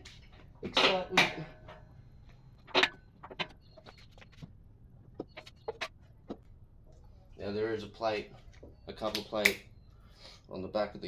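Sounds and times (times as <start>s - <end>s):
clicks and knocks of engine work: 0.0s - 6.6s.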